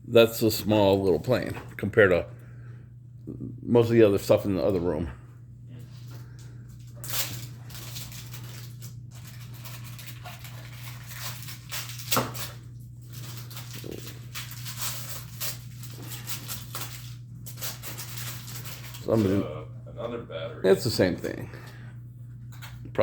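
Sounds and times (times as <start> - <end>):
wrapping paper rustling and tearing: 5.8 - 19.5.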